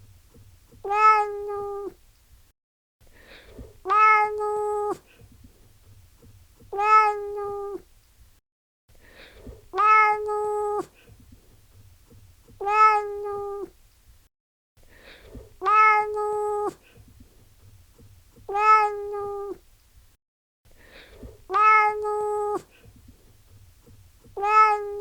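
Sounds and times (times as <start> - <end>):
cat meowing: 0.8 - 2.0, 3.8 - 5.0, 6.7 - 7.8, 9.8 - 10.9, 12.6 - 13.7, 15.6 - 16.8, 18.5 - 19.6, 21.5 - 22.7, 24.4 - 25.0.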